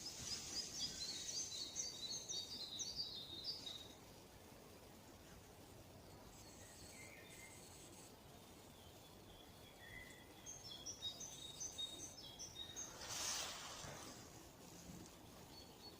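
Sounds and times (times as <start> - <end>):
songbirds singing: 0.0 - 15.9
brief burst of noise: 12.9 - 14.3.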